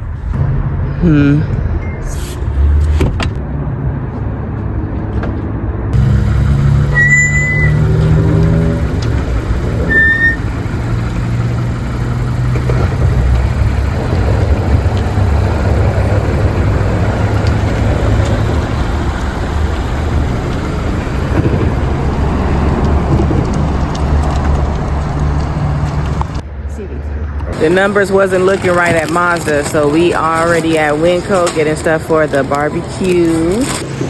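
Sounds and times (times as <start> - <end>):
road noise rushing: 0.0 - 34.0
car engine hum: 5.9 - 34.0.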